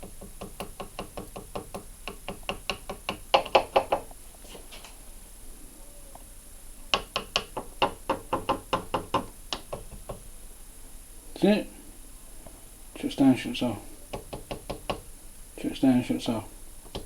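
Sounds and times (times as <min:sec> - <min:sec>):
brush tapping on transformer: 0:00.0 - 0:04.2, 0:06.9 - 0:10.3, 0:14.1 - 0:15.1.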